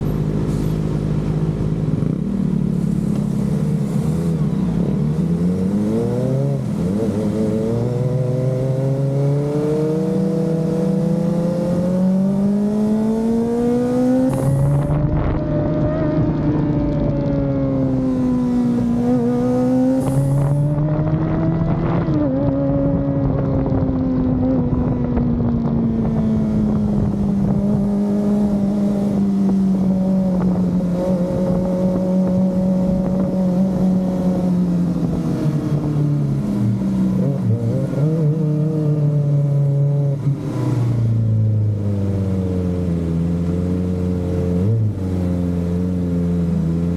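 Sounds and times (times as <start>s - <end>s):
faint engine hiss: 0.1s - 5.2s.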